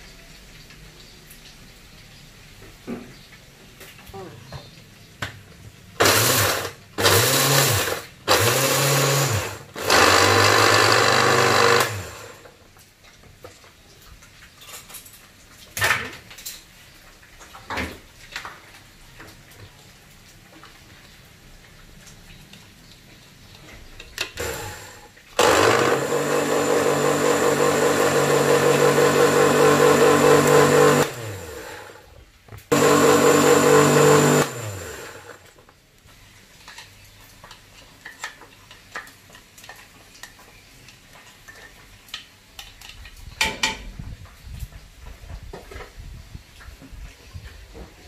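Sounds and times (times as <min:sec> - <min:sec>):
electric blender grinding: 0:06.0 - 0:12.5, 0:24.3 - 0:32.1, 0:32.7 - 0:35.5.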